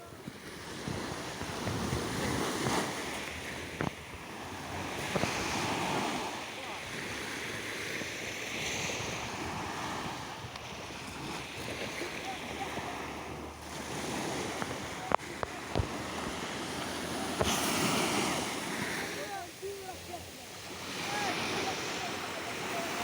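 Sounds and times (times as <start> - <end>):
wind rumbling on microphone: 0.0 - 19.3
small waves washing on shore: 0.0 - 23.0.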